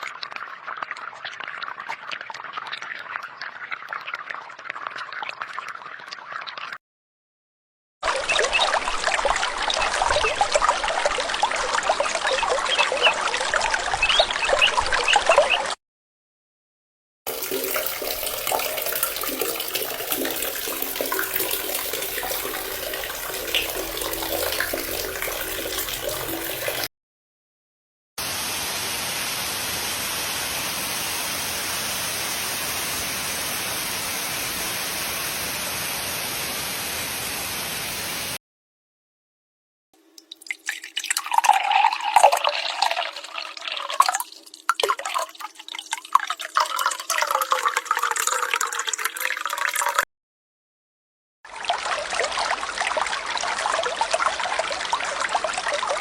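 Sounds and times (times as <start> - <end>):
steady running water: 0.0 - 6.8, 8.0 - 15.8, 17.3 - 26.9, 40.2 - 50.0, 51.5 - 56.0
uneven moving water: 0.0 - 6.8, 8.0 - 15.8, 17.3 - 26.9, 40.2 - 50.0, 51.5 - 56.0.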